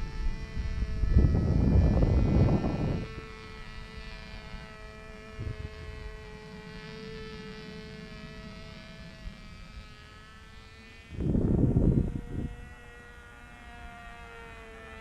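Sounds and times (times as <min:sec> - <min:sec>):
wind buffeting microphone: 0:00.0 - 0:10.1, 0:11.0 - 0:12.9
model aircraft motor buzzing: 0:00.0 - 0:15.0.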